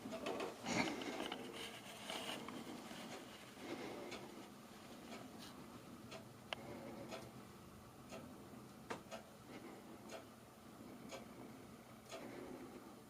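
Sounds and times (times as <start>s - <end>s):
faint regular ticking: 0.0s - 13.0s.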